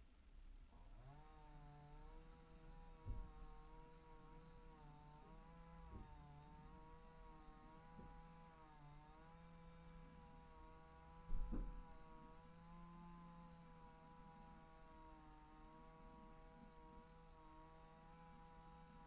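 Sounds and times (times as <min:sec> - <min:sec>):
knocks and thud: 0:03.0 - 0:03.6, 0:11.3 - 0:12.0.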